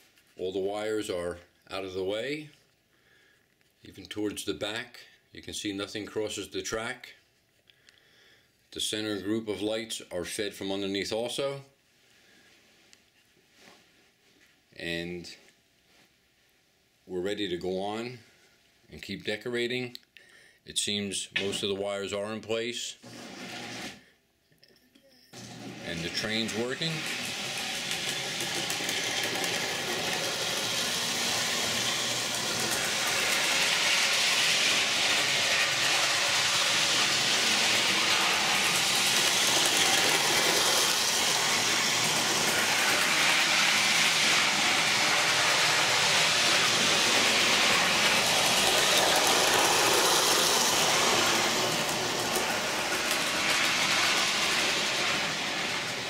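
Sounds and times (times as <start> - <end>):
model train running on track: 26.0 - 56.0.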